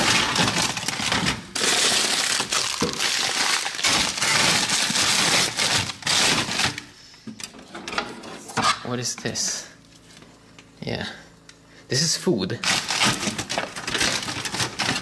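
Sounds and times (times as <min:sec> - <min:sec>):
frozen food packages crunching: 0:00.0 - 0:06.9, 0:12.5 - 0:15.0.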